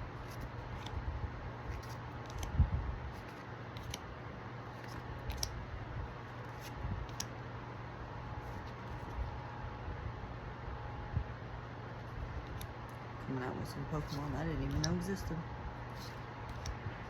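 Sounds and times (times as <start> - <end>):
trading cards clicking and rustling: 0.0 - 1.0, 1.6 - 5.6, 6.2 - 7.4, 8.4 - 9.2, 12.0 - 13.1, 13.9 - 17.0
steady low hum: 0.0 - 17.0.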